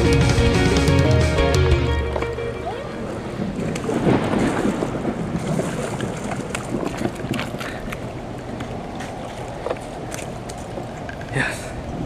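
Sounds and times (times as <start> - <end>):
water rushing: 0.0 - 12.0
wind buffeting microphone: 2.9 - 12.0.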